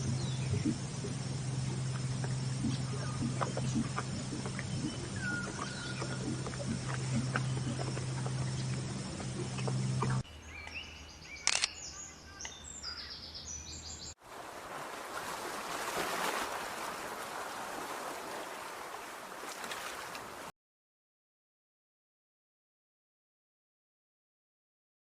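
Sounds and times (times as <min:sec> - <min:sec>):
low steady hum: 0:00.0 - 0:11.2
scattered clicks: 0:11.4 - 0:11.8.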